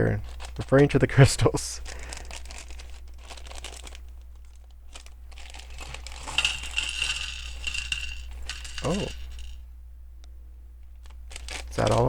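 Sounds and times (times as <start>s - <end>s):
plastic bag crinkling: 0.0s - 9.6s, 10.8s - 12.0s.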